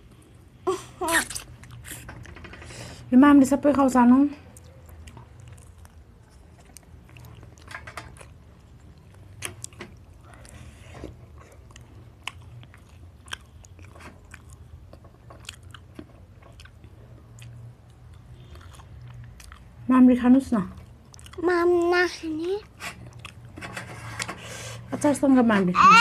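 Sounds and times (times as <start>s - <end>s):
chewing and biting food: 4.6s - 19.8s, 20.8s - 21.5s, 23.0s - 23.6s.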